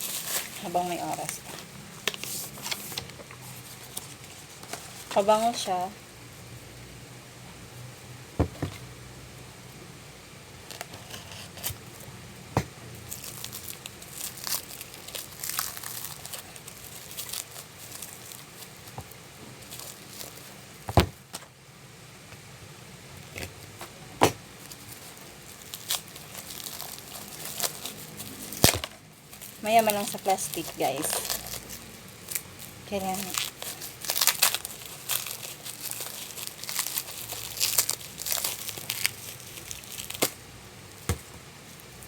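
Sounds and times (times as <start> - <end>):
plastic packaging crinkling: 0.0 - 5.8, 13.1 - 20.9, 24.6 - 42.0.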